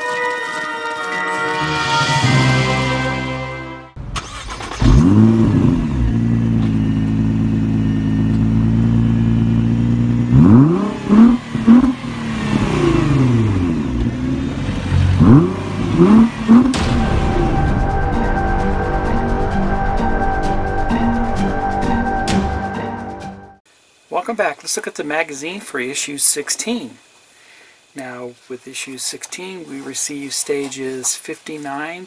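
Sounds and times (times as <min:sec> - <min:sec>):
car engine starting and idling: 0:04.0 - 0:23.6
engine revving blips: 0:04.1 - 0:23.0.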